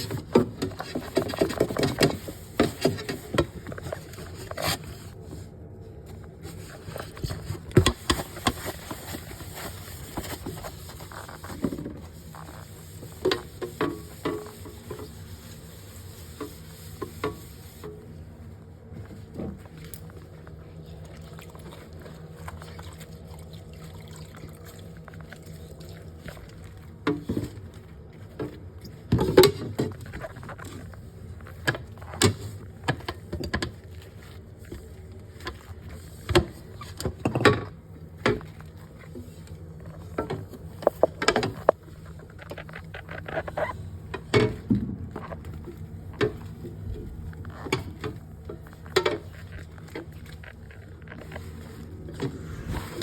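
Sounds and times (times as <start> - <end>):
items knocking and clattering: 0.0 - 4.6.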